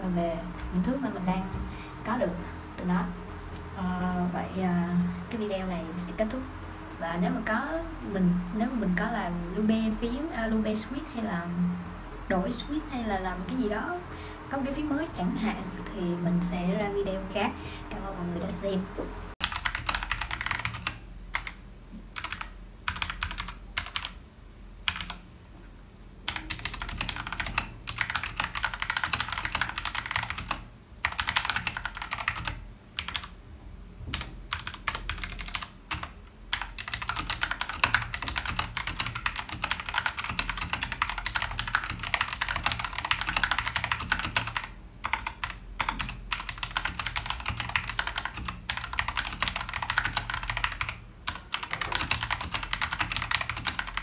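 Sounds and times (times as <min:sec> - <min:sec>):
typing on mechanical keyboard: 0:19.4 - 0:21.6, 0:22.2 - 0:24.2, 0:24.9 - 0:25.2, 0:26.3 - 0:33.4, 0:34.1 - 0:54.0.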